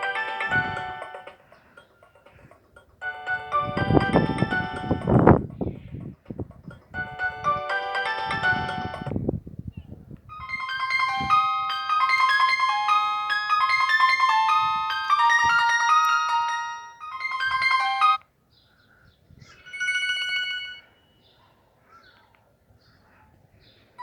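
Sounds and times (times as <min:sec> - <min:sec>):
mobile phone ringtone melody: 0:00.0 - 0:02.4, 0:03.0 - 0:06.0, 0:06.8 - 0:09.2, 0:10.3 - 0:18.2, 0:19.5 - 0:21.2.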